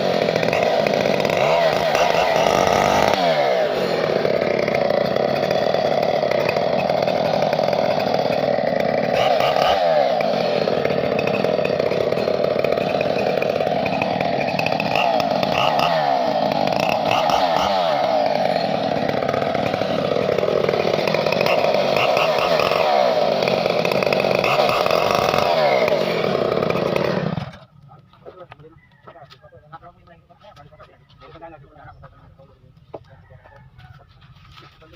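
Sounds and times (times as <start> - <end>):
chainsaw running at high revs: 0.0 - 27.9.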